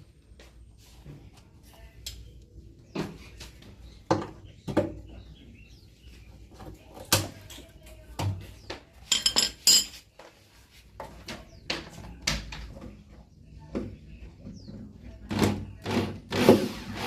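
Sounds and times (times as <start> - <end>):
metal parts and tools clanking: 9.1 - 10.0
ringing metallic clinks: 9.1 - 10.0.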